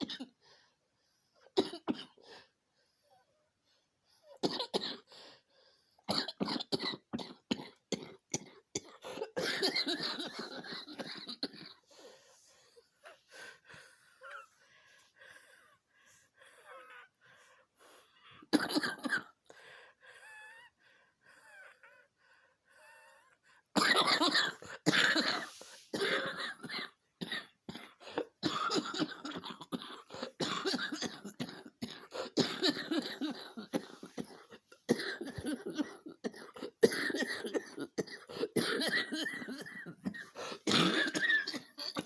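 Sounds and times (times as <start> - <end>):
woman coughing: 1.6 - 2.2, 4.4 - 5.1, 6.1 - 11.8, 18.5 - 19.4, 23.8 - 42.0.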